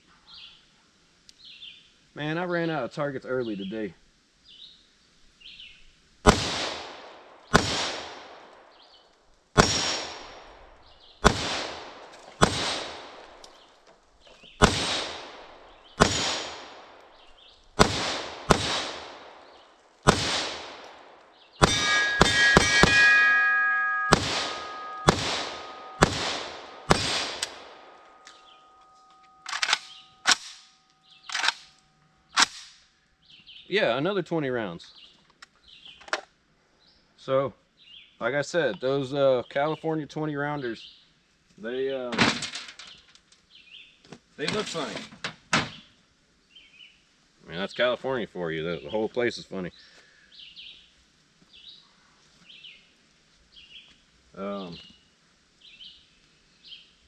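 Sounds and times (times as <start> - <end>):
rifle shots: 6.2 - 8.8, 9.6 - 13.5, 14.6 - 31.7
faint ringing tone: 21.7 - 26.9, 27.5 - 31.0.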